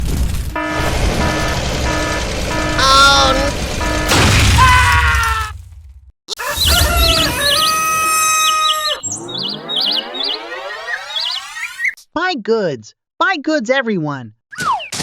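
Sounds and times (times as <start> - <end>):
bird-like chirps: 6.4 - 12.0
noisy burst with falling tone: 6.5 - 11.9
long rising sweep: 8.3 - 11.9.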